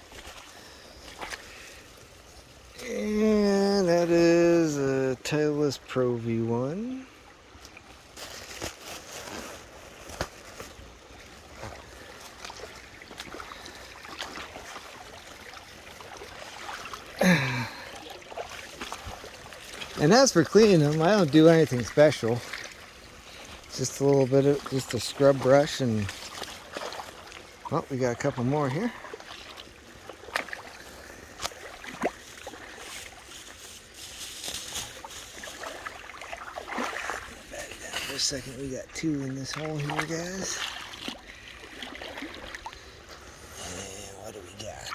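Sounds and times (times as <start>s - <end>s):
splashing while wading: 0.0s - 4.6s, 7.6s - 43.8s
creek water running: 0.0s - 44.9s
short voice sound: 2.8s - 5.0s.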